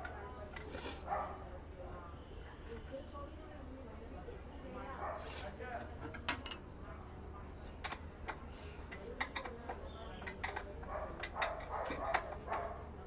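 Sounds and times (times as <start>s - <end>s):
tools clicking and tapping on metal: 0.0s - 0.7s, 6.0s - 6.7s, 7.6s - 12.8s.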